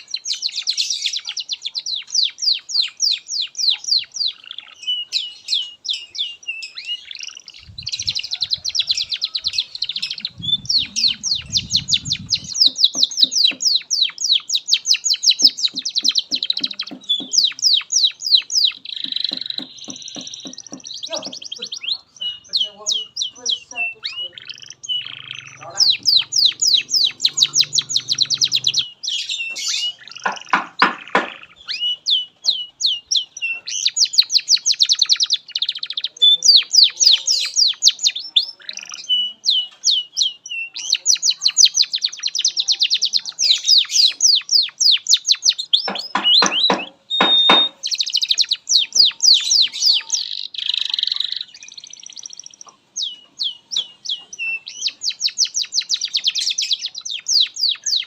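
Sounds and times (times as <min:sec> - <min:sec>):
canary singing trills: 0:00.0 - 0:58.0
harsh rolling bird notes: 0:09.1 - 0:12.7, 0:22.6 - 0:28.9.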